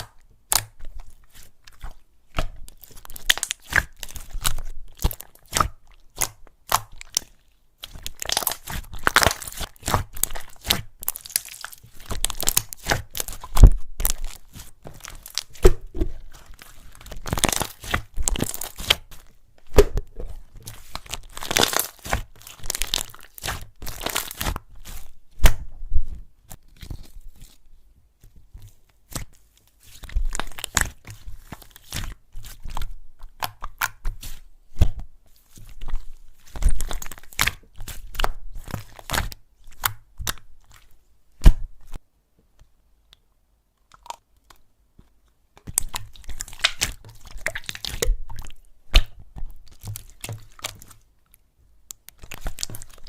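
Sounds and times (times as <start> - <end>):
slime squeezed crackling: 0.0 - 25.6, 35.7 - 40.8, 45.6 - 51.0, 52.0 - 53.0.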